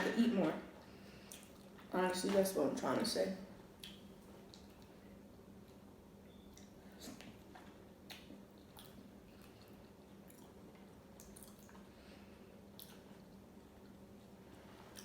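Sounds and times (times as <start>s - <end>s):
low steady hum: 0.0s - 15.0s
person chewing food: 1.2s - 1.9s, 6.5s - 15.0s.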